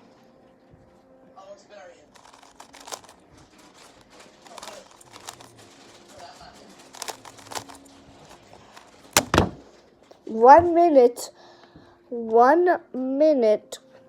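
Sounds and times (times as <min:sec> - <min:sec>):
speed cube plastic clicks: 0:02.2 - 0:03.2, 0:04.4 - 0:05.6, 0:06.9 - 0:07.8, 0:09.2 - 0:09.6
loud knocks: 0:09.2 - 0:09.6.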